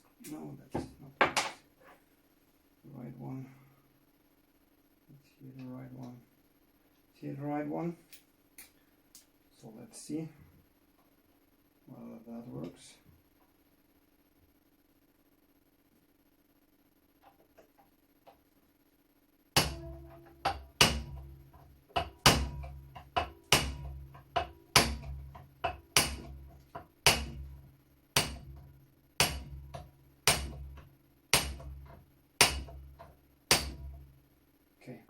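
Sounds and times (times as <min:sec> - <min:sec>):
hammer striking metal punch: 0:19.6 - 0:27.6, 0:28.2 - 0:34.1.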